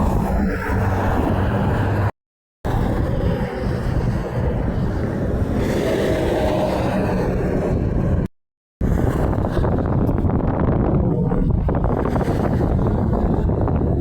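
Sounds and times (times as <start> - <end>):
highway traffic rumble: 0.0 - 2.1
wind buffeting microphone: 0.0 - 14.0.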